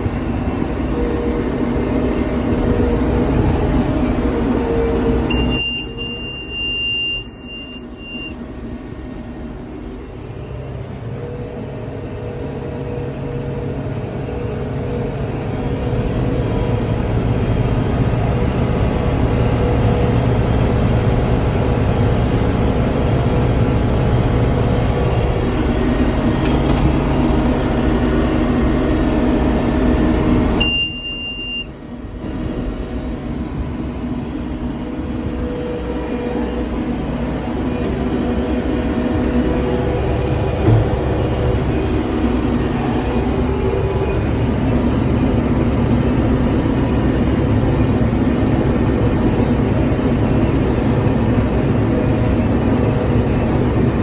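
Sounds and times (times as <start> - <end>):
tractor diesel engine running: 0.0 - 54.0
steady high beep: 5.3 - 8.4, 30.6 - 31.7.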